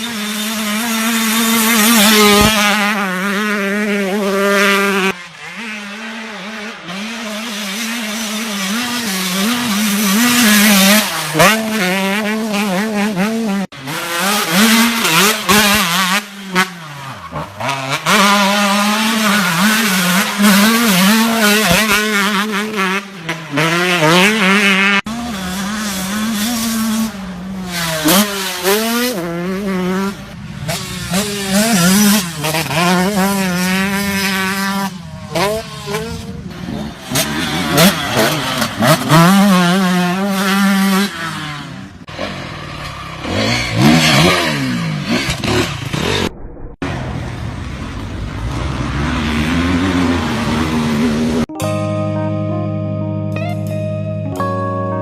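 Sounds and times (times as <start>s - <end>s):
dirt bike engines revving: 0.0s - 51.6s.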